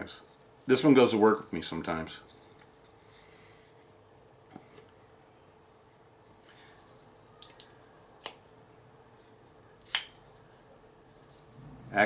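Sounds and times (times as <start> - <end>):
folding knife clicks: 9.8 - 10.1.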